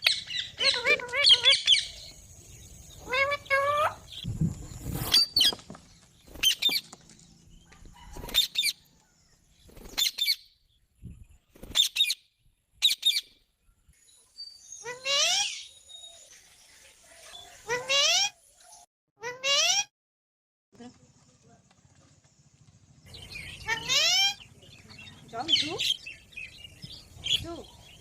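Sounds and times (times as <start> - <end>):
low rustle of wings: 4.2 - 8.6, 9.5 - 10.2.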